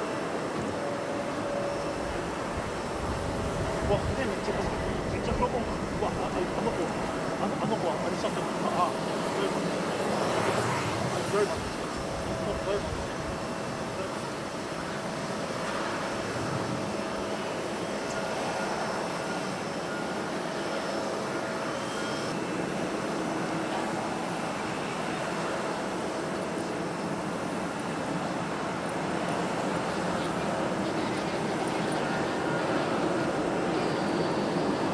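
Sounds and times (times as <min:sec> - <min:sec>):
distant jet engines whining: 0:00.0 - 0:34.9
wind buffeting microphone: 0:00.4 - 0:18.6.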